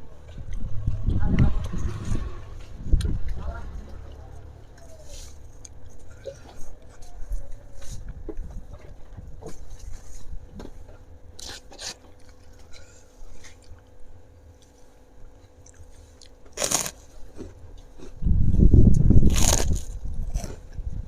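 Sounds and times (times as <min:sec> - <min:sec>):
person chewing crunchy food: 0:11.0 - 0:21.0.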